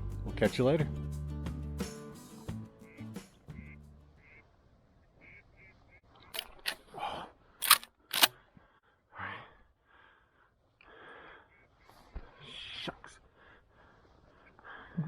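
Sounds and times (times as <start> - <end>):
sharp cracks: 7.6 - 8.4.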